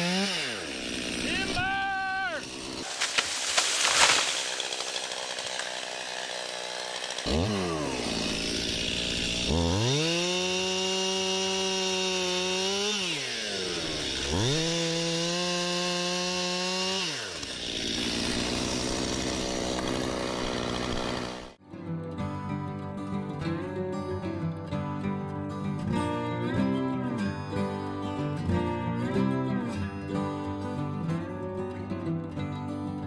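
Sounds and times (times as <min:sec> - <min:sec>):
chainsaw idling and revving: 0:00.0 - 0:21.6.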